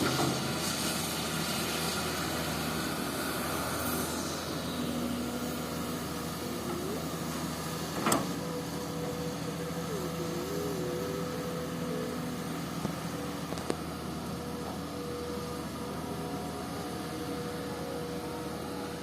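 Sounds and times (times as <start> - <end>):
excavator diesel engine running: 0.0 - 19.0.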